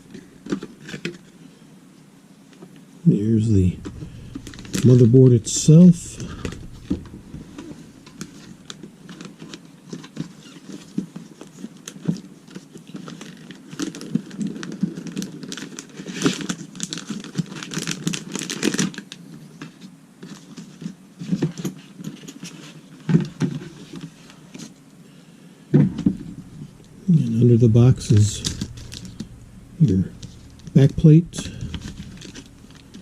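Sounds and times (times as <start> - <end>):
packaging crinkling and rustling: 3.2 - 24.7, 25.9 - 33.0.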